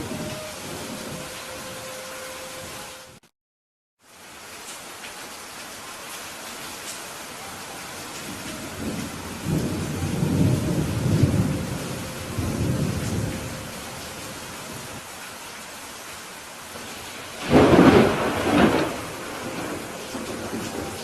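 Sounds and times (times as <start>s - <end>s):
thunder rumbling: 0.0s - 1.8s, 8.2s - 15.0s, 16.8s - 21.0s
heavy rain hissing: 0.0s - 3.2s, 4.0s - 21.0s.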